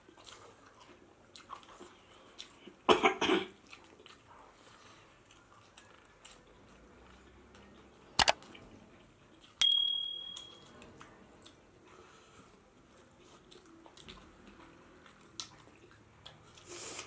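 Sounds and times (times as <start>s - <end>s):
tableware clicking: 9.6s - 10.6s
metal clinking on a dish: 9.6s - 10.7s.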